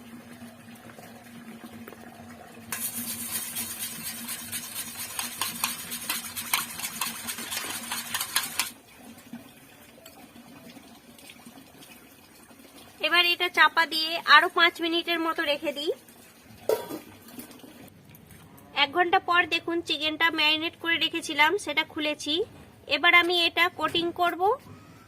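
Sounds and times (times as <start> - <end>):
utensil whisking in a bowl: 2.7 - 8.8.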